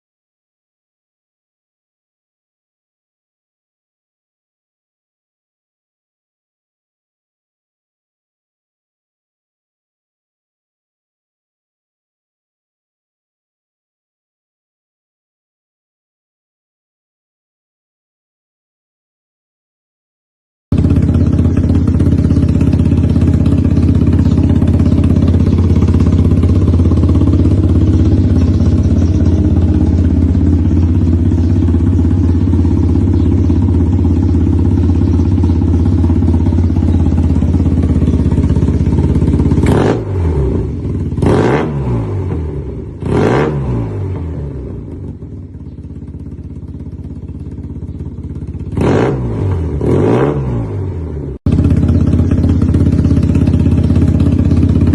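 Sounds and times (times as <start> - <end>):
motorcycle engine idling and revving: 20.7 - 54.9.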